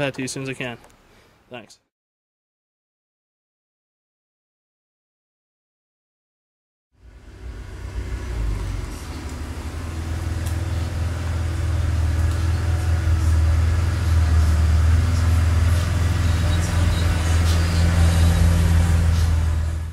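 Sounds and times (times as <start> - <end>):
car engine running: 7.0 - 19.9.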